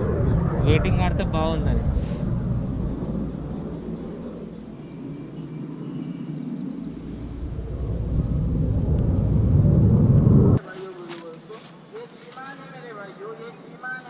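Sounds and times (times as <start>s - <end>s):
low outdoor rumble: 0.0s - 10.6s
faint bird chirps: 2.6s - 7.8s.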